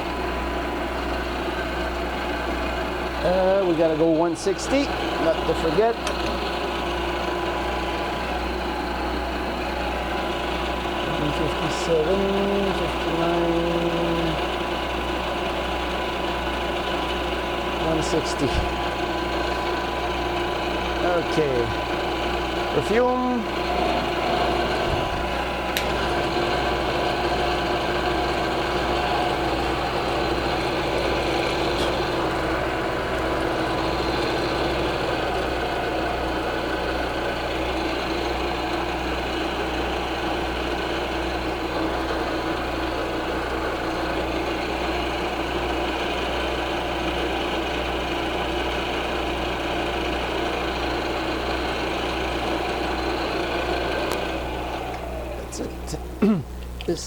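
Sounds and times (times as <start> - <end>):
milling machine drone: 0.0 - 57.0.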